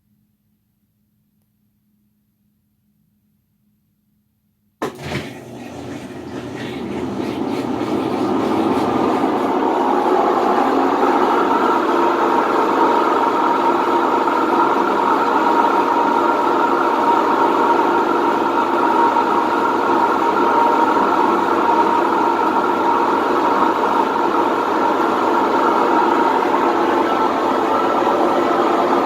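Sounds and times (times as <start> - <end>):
washing machine drum spinning: 4.8 - 14.8.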